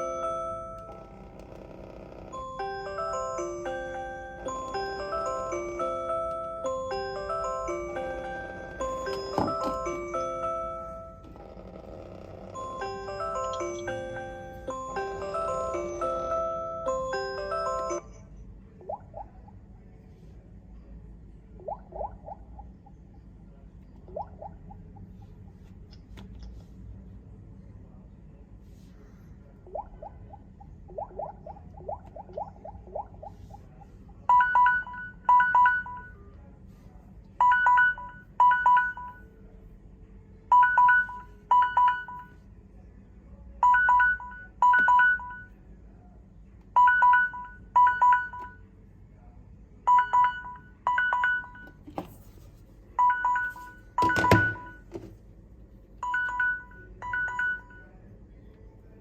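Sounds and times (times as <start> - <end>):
smartphone ringtone: 0.0 - 11.8, 12.4 - 18.2, 34.3 - 36.2, 37.4 - 39.3, 40.5 - 42.4, 43.6 - 45.6, 46.8 - 48.6, 49.9 - 51.8, 53.0 - 54.8, 56.0 - 57.9.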